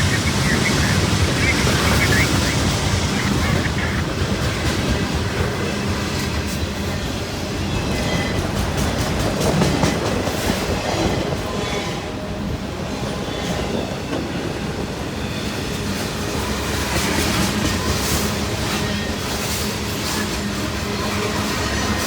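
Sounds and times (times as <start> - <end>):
wheels clacking over rail joints: 0.0 - 11.3
train wheels rumbling on rail: 0.0 - 22.0.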